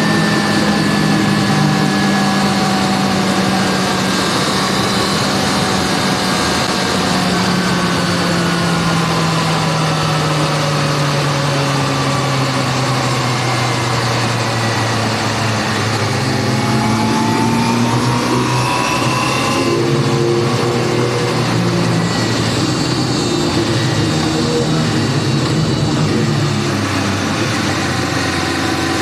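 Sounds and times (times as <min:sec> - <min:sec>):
motorcycle engine revving: 0:00.0 - 0:29.0
wind rush: 0:12.7 - 0:29.0.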